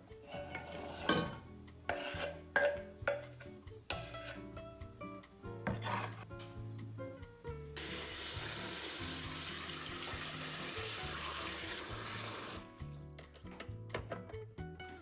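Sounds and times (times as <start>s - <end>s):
water running into sink: 7.8s - 12.8s.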